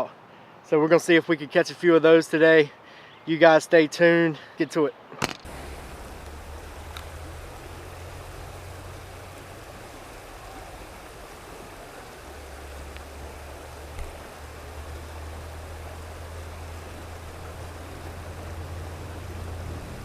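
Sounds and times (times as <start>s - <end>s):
river water rushing: 5.5s - 20.0s.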